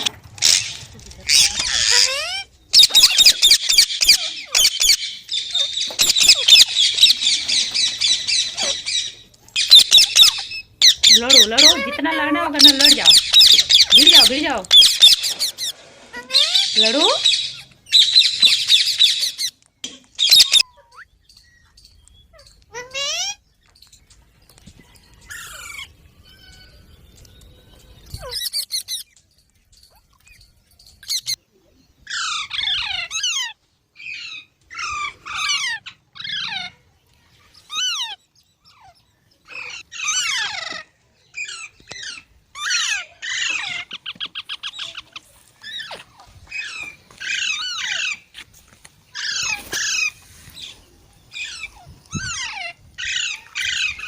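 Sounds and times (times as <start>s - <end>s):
parakeet screeching: 0.0s - 19.5s, 20.2s - 21.0s.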